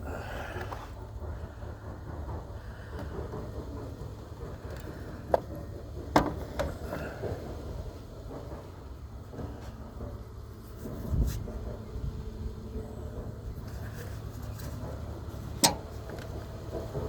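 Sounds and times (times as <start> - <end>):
wind rumbling on microphone: 10.7 - 17.0.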